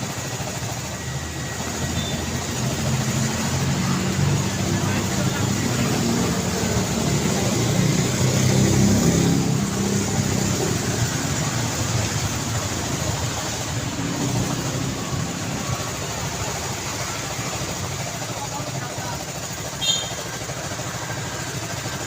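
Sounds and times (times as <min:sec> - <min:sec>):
traffic and tyre noise: 0:00.0 - 0:22.0
car engine passing: 0:02.8 - 0:18.0.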